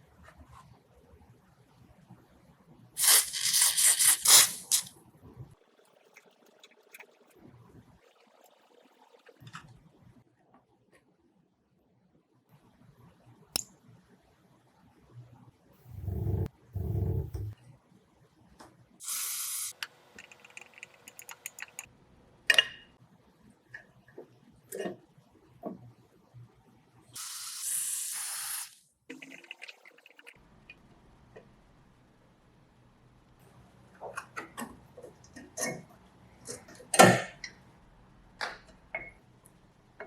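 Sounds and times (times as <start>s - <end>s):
low dull thuds: 15.8s - 17.6s.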